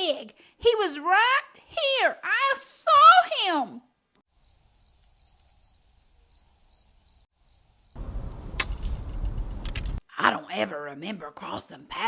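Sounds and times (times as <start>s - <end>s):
crickets chirping: 4.3s - 8.0s.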